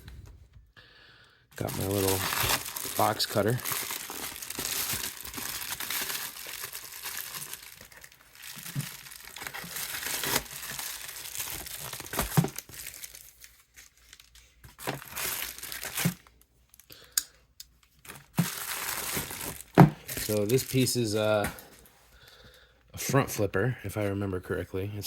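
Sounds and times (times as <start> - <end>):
box cutter cutting package: 1.6 - 6.4, 9.5 - 10.7
packaging crinkling and tearing: 1.6 - 16.9, 17.9 - 21.8.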